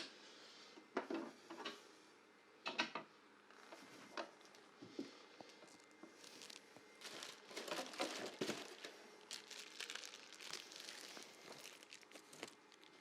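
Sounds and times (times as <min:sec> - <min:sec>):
crinkling and rustling: 0:03.5 - 0:13.0.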